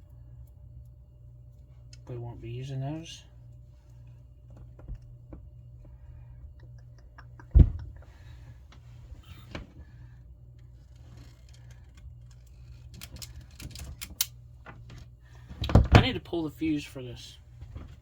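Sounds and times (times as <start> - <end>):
steady low hum: 0.0 - 18.0
heavy thump: 7.5 - 7.9.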